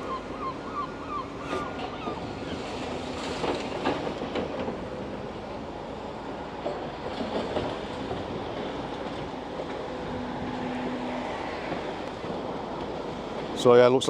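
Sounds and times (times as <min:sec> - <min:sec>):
tracks clanking and rattling: 0:03.2 - 0:05.3.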